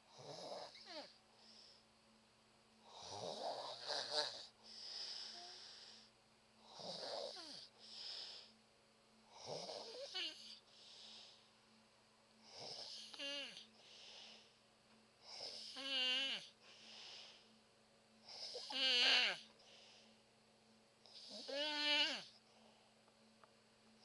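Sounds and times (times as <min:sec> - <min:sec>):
woman snoring: 0:00.1 - 0:01.7, 0:02.8 - 0:08.5, 0:09.3 - 0:11.4, 0:12.5 - 0:13.7, 0:15.3 - 0:16.6, 0:18.3 - 0:19.5, 0:21.1 - 0:22.4.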